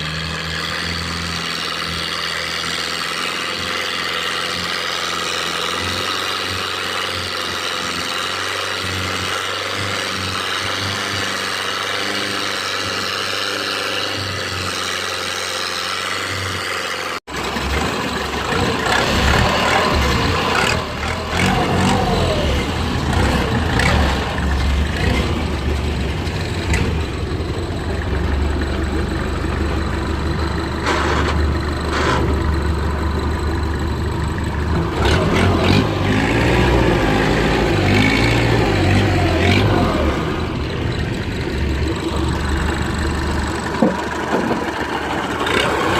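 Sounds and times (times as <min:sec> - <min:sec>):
boat engine rumbling: 0:13.8 - 0:45.9.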